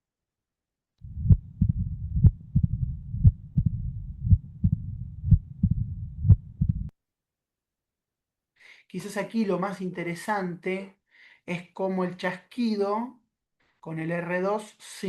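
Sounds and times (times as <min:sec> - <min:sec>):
heartbeat with sharp clicks: 0:01.0 - 0:06.9
low diastolic heart rumble: 0:01.0 - 0:06.9.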